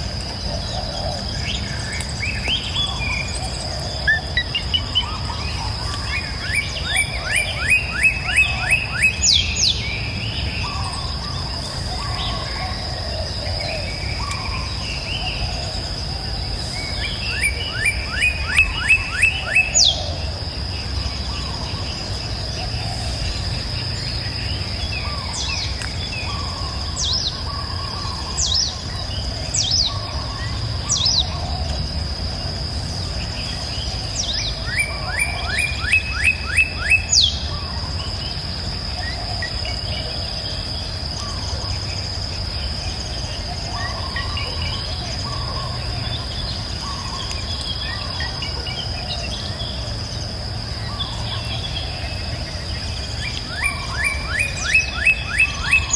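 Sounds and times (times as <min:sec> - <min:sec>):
high insect drone: 0:00.0 - 0:55.9
songbirds calling: 0:00.0 - 0:55.9.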